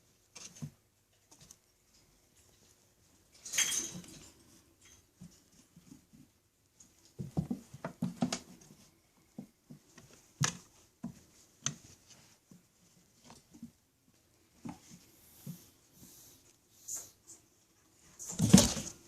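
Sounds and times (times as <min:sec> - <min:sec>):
pets thumping on carpeted perch: 0:07.1 - 0:12.4, 0:18.2 - 0:19.0.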